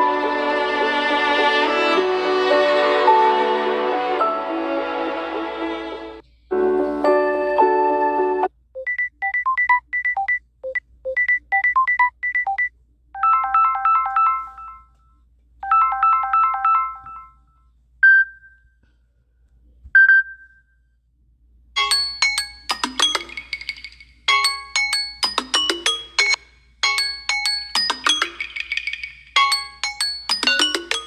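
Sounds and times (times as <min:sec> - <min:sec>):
bright percussive chiming tone: 0:21.8 - 0:31.0
chiming arpeggio: 0:21.8 - 0:31.0.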